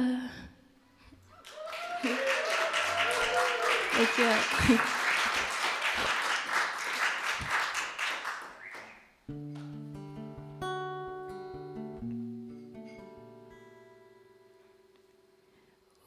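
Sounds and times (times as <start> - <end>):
audience applause: 1.3 - 9.0
acoustic guitar chords: 8.8 - 15.6.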